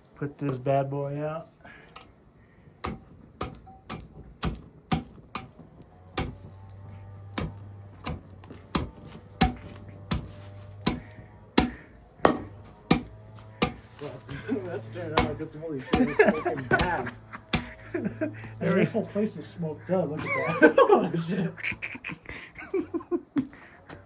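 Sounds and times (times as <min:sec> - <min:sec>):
steady low hum: 0:01.4 - 0:24.0
stick beating plastic: 0:02.8 - 0:14.0, 0:15.0 - 0:17.8.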